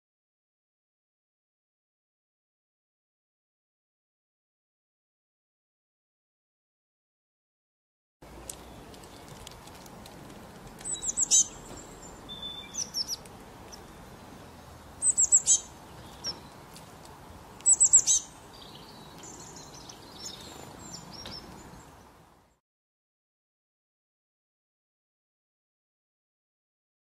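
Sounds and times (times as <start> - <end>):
bird calling high downward notes: 10.8 - 14.0, 15.0 - 16.5, 17.6 - 21.8
soft high bird chirps: 10.8 - 16.7, 17.6 - 22.2.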